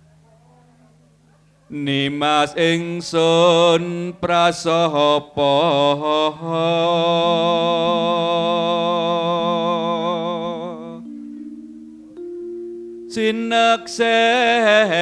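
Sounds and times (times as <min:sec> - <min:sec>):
person singing with vibrato: 0:01.7 - 0:15.0
held accompaniment chords: 0:07.2 - 0:15.0.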